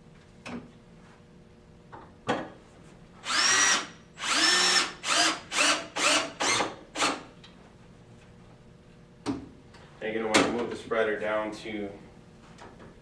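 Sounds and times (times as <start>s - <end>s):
power drill driving bolts: 3.3s - 7.2s.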